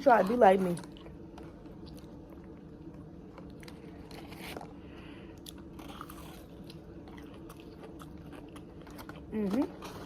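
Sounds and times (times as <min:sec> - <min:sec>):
food crunches: 0:00.0 - 0:10.0
person chewing food: 0:00.0 - 0:10.0.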